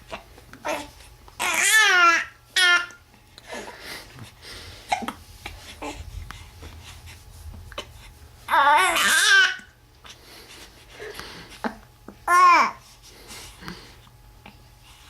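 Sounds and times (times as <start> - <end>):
baby crying: 0.7 - 3.0, 8.5 - 9.7, 12.3 - 12.8
baby fussing: 8.5 - 9.7.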